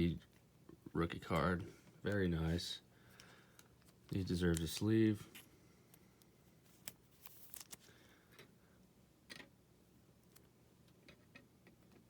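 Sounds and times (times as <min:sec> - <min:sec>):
card slipped into plastic sleeve: 0:04.4 - 0:05.0, 0:06.7 - 0:07.9.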